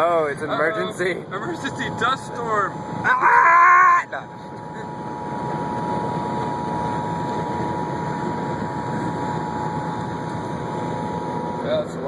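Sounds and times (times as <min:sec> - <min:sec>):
vehicle road and engine noise: 0:00.0 - 0:12.0.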